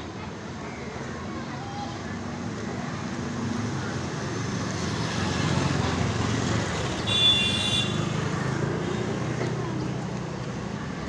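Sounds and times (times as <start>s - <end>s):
road traffic noise: 0.0s - 11.0s.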